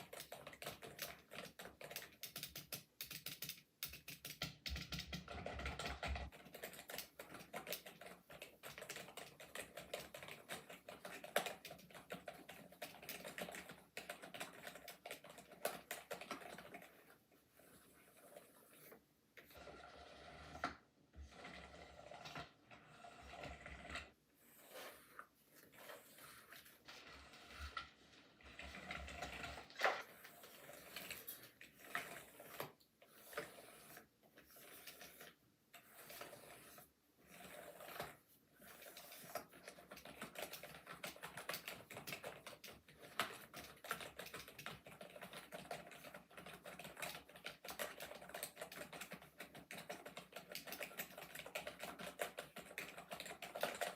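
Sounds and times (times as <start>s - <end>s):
computer keyboard typing: 0.0s - 17.0s, 38.8s - 53.9s.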